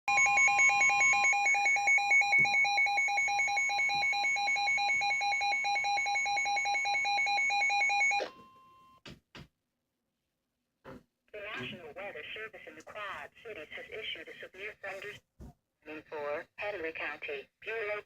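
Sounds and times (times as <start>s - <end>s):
rapid electronic beeping alarm: 0.1s - 8.3s
steady warning alarm tone: 0.1s - 9.0s.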